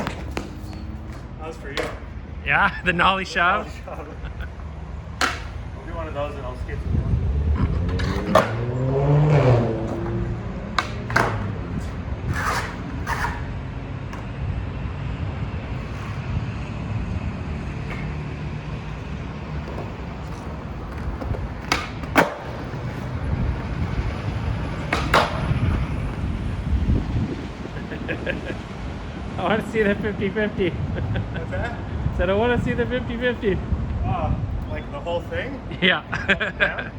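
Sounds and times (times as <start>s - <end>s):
skateboard popping and landing clacks: 0.0s - 2.1s, 5.2s - 5.6s, 7.9s - 8.7s, 9.9s - 13.5s, 19.6s - 23.0s, 24.8s - 25.6s
skateboard wheels rolling on pavement: 0.0s - 36.9s.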